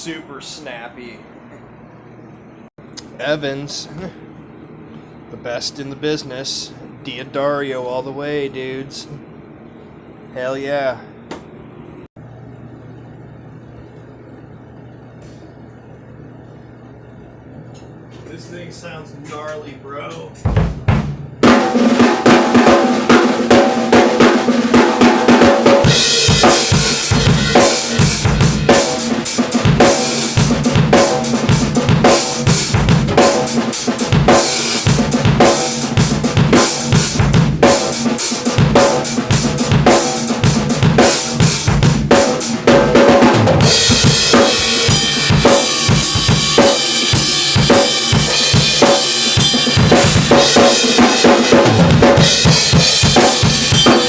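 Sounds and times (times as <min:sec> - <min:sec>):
bass drum: 0:20.5 - 0:21.5, 0:25.8 - 0:29.0, 0:38.6 - 0:54.0
cymbals: 0:43.6 - 0:54.0.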